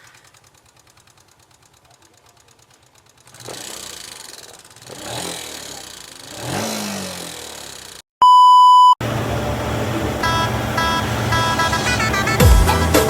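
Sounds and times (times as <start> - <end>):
engine knocking: 0.0 - 8.0
motorcycle engine revving: 0.0 - 8.0
loud steady beep tone: 8.2 - 9.0, 10.2 - 12.7
music: 10.8 - 13.0.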